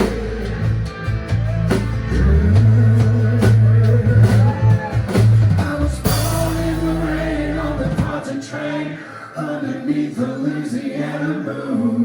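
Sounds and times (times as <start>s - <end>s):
bass notes: 0.0s - 8.2s
drum kit hits: 0.0s - 8.2s
guitar: 0.0s - 8.8s.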